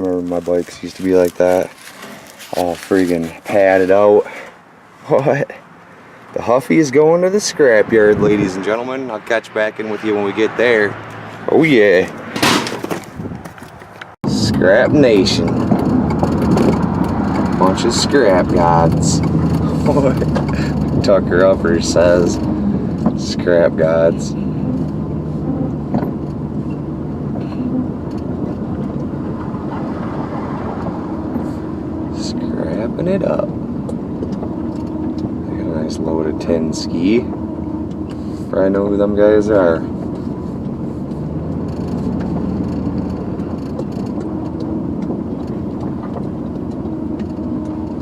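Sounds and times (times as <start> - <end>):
truck engine and road rumble: 0.0 - 48.0
faint clicks and rattles: 13.4 - 21.6, 40.1 - 48.0.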